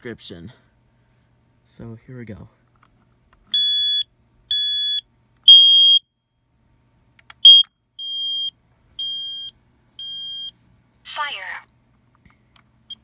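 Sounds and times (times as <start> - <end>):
smoke alarm beeping: 3.5 - 6.0, 7.4 - 10.5
lower-pitched alarm beeps: 7.4 - 10.5.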